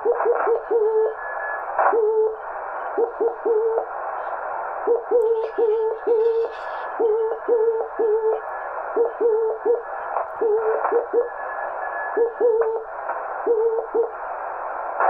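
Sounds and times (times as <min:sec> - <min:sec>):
radio band hiss: 0:00.0 - 0:15.0
chirpy morse code tones: 0:04.9 - 0:14.2.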